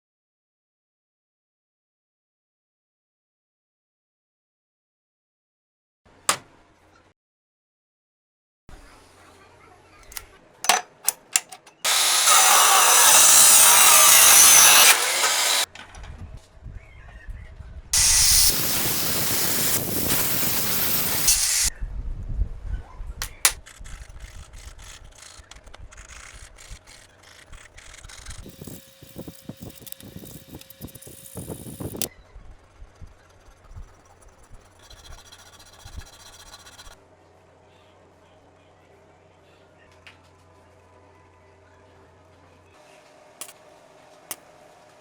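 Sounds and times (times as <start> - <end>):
sharp tool clicks: 10.0 - 15.7, 23.2 - 32.1
workshop machine noise: 10.0 - 16.0, 18.0 - 21.7, 23.2 - 32.1.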